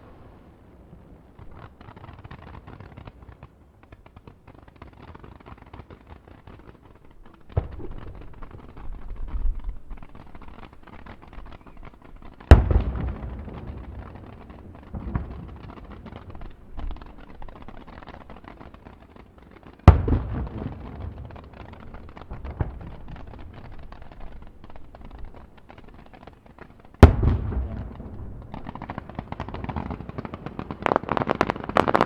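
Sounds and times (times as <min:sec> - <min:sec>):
fireworks crackling: 0:00.0 - 0:32.0
sharp firework bang: 0:27.0 - 0:30.0.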